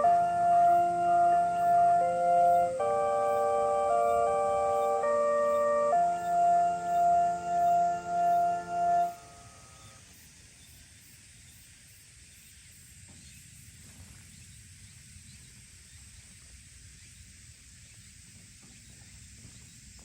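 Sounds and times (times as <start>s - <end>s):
loudspeaker chime: 0.0s - 9.5s
outdoor background hiss: 0.0s - 20.0s.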